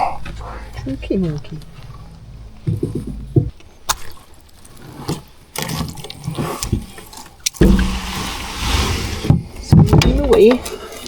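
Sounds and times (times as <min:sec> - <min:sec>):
water splashing: 0:05.5 - 0:11.0
loud low thump: 0:07.6 - 0:08.6.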